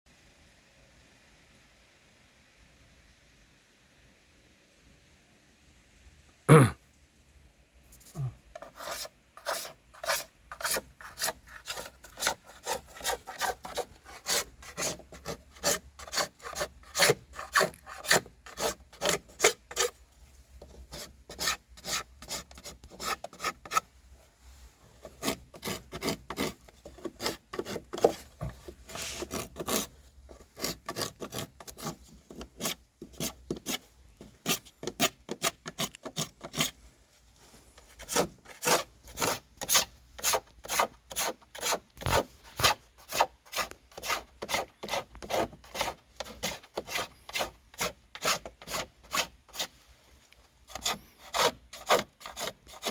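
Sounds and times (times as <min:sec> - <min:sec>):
knife scraping wood: 0:08.1 - 0:20.0, 0:20.6 - 0:23.9, 0:25.0 - 0:33.8, 0:34.4 - 0:36.8, 0:37.8 - 0:49.7, 0:50.7 - 0:52.9.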